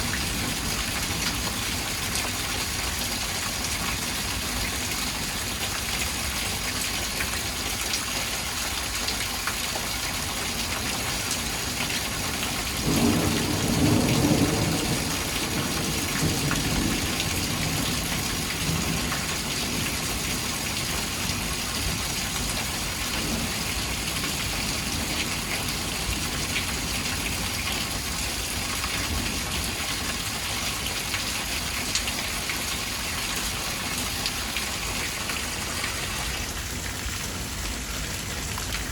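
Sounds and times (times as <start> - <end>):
steady rain falling: 0.0 - 38.9
low rumble of thunder: 12.1 - 30.3.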